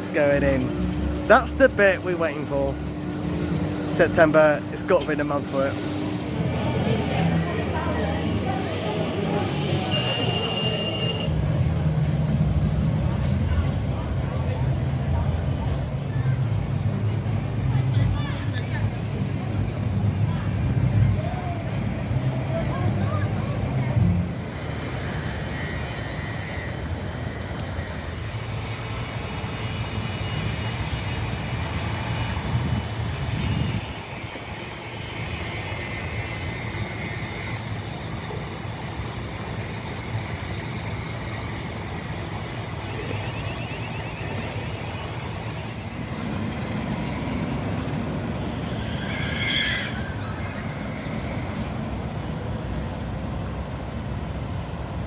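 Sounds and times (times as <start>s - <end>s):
low outdoor rumble: 0.0s - 9.9s
high-pitched squeal: 0.0s - 11.3s, 24.4s - 51.8s.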